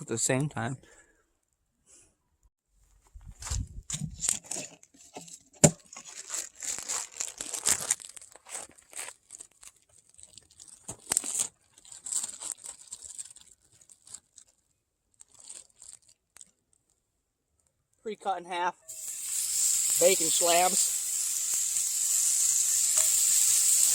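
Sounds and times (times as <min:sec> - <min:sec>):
plastic packaging crinkling: 0:03.4 - 0:17.0.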